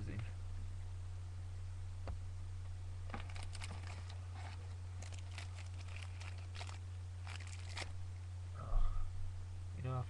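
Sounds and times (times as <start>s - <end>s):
steady low hum: 0.0s - 10.0s
card wrapper crinkling: 3.1s - 8.0s.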